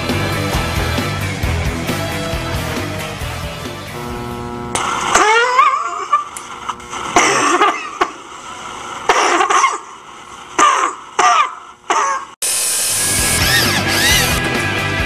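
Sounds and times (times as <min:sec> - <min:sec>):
person coughing: 0:07.1 - 0:08.2, 0:09.1 - 0:09.9.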